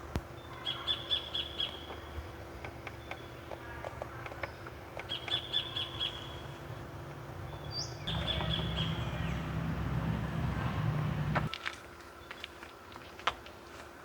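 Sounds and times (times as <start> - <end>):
birds chirping trills: 0.3 - 11.5
low steady rumble: 6.3 - 11.5.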